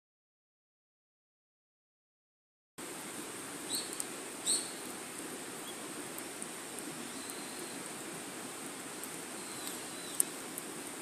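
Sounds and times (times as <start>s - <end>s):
wood fire hissing and crackling: 2.8s - 11.0s.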